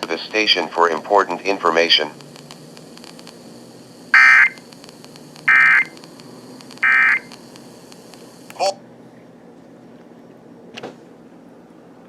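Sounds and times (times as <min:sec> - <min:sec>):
faint steady background noise: 0:00.0 - 0:12.0
short digital data bursts: 0:01.1 - 0:08.5.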